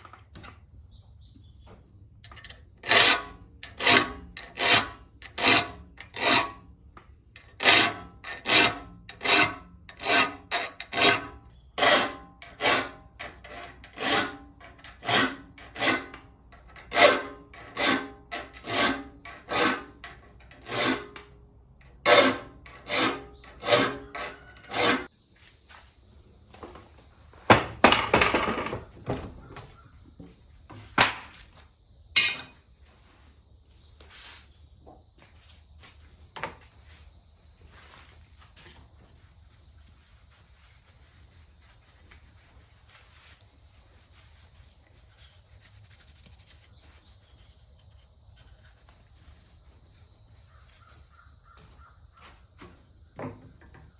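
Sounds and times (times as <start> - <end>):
file stroking saw teeth: 2.8 - 6.6, 7.4 - 25.1.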